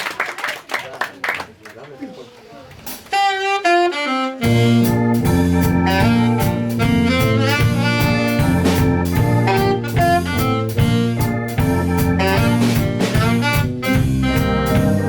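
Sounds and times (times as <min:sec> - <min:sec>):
drums keeping a beat: 0:02.8 - 0:15.0
saxophone melody: 0:03.1 - 0:15.0
keyboard chords: 0:03.7 - 0:15.0
bass: 0:04.4 - 0:15.0.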